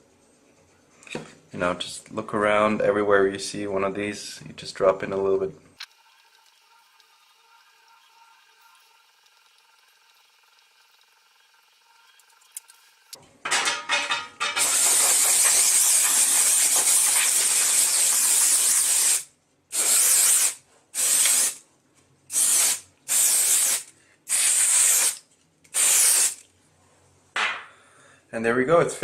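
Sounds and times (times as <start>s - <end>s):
aerosol spray can hissing: 14.6s - 21.6s, 22.3s - 25.2s, 25.8s - 26.4s.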